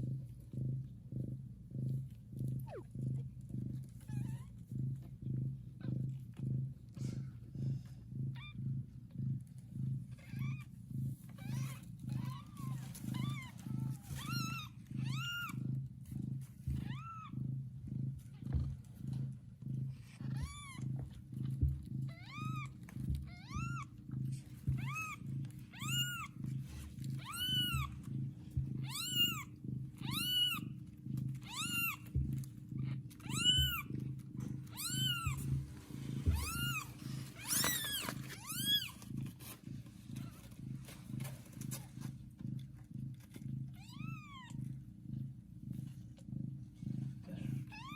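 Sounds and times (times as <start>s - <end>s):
cat purring: 0.0s - 47.9s
kitten mewing: 24.7s - 26.4s, 27.2s - 28.0s, 28.8s - 30.7s, 31.4s - 32.2s, 32.8s - 34.0s, 34.6s - 39.0s.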